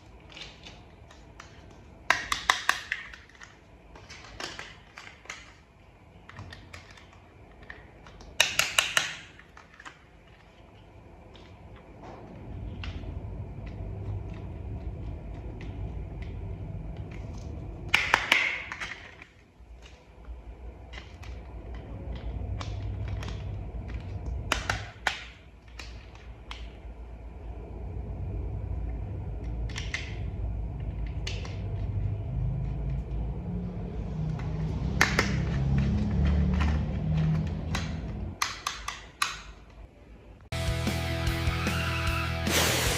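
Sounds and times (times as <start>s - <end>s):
plastic toy parts clicking: 0.2s - 11.6s, 34.6s - 39.8s
low hum: 10.3s - 18.0s, 18.7s - 38.4s.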